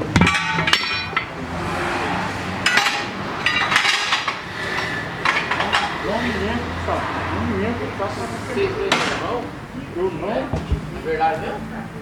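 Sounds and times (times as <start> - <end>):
metal tools clanking: 0.0 - 7.0.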